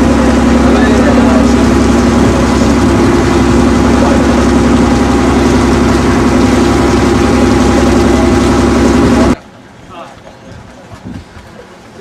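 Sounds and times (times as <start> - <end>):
boat engine running loudly: 0.0 - 9.4.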